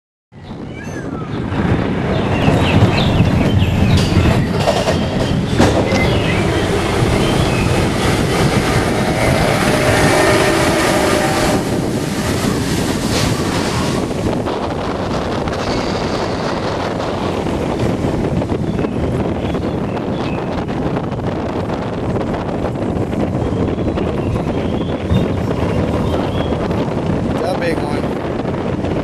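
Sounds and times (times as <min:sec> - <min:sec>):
roller coaster wheels rumbling on rails: 0:00.5 - 0:29.0
wheels squealing: 0:02.1 - 0:14.0.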